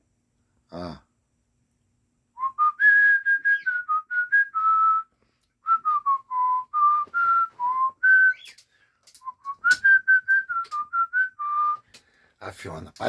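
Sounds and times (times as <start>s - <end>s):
person whistling a tune: 2.4s - 8.6s, 9.2s - 11.9s.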